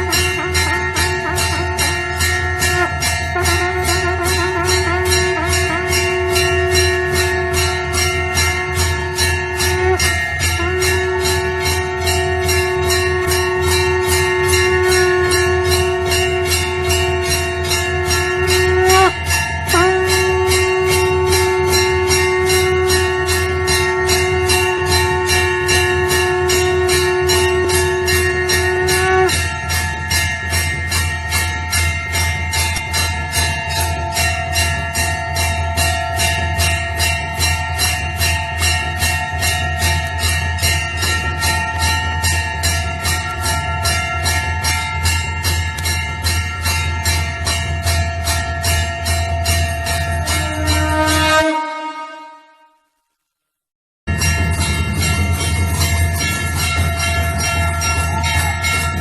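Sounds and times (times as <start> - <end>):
temple bell ringing: 0.0 - 52.9, 54.1 - 59.0
rapid bell jingling: 54.1 - 59.0.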